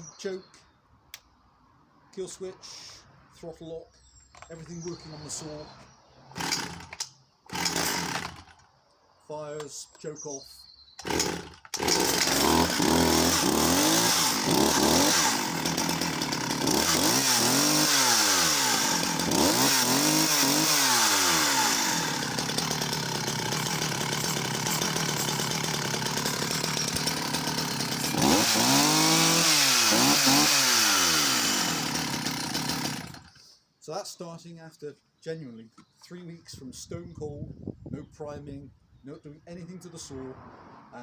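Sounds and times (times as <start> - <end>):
chainsaw engine revving and idling: 6.3 - 8.7, 11.0 - 33.4.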